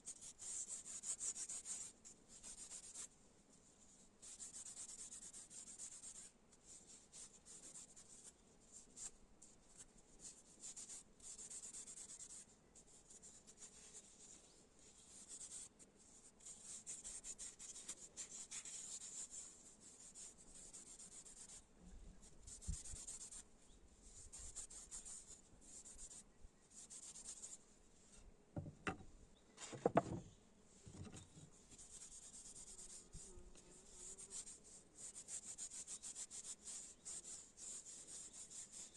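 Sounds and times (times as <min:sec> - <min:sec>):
dull knocks: 0:28.6 - 0:30.3.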